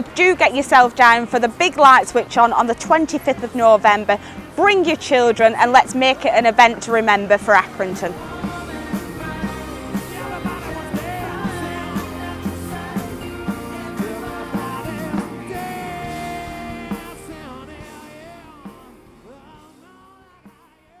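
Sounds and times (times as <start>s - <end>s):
rock music with sung vocal: 0.0s - 21.0s.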